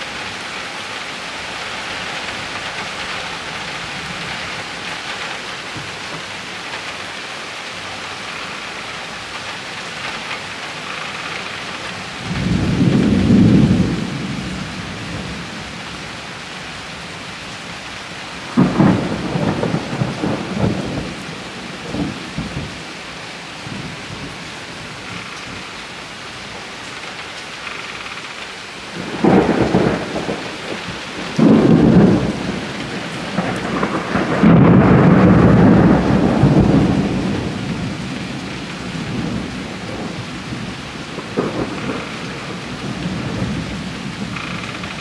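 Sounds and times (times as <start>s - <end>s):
steady rain falling: 0.0s - 45.0s
crackling thunder claps: 7.8s - 16.0s, 18.5s - 22.8s, 28.8s - 45.0s
low thunder rumble: 10.8s - 15.8s, 18.5s - 22.8s, 28.9s - 45.0s.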